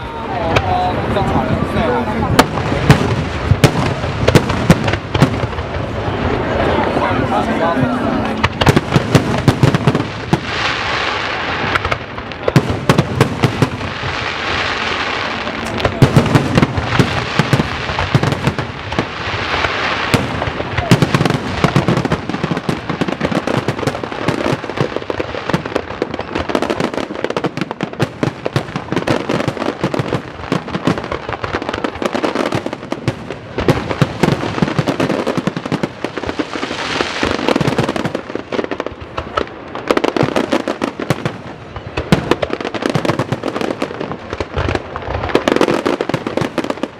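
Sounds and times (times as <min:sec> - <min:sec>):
fireworks bangs and crackling: 0:00.0 - 0:46.9.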